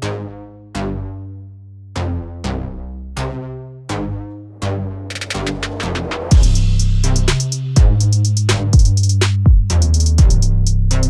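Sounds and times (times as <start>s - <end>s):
synthesizer melody: 4.0s - 7.3s
drum beat with hi-hat: 5.1s - 11.0s.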